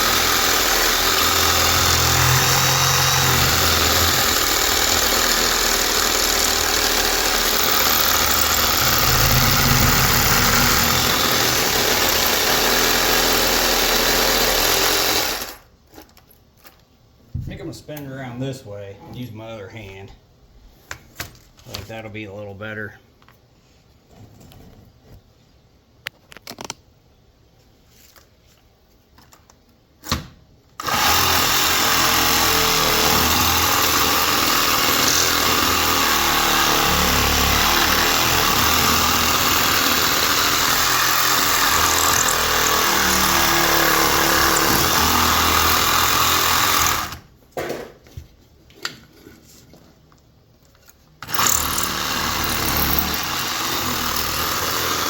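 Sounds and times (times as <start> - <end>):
power tool cutting metal: 0.0 - 15.6, 30.8 - 47.2, 51.2 - 55.0.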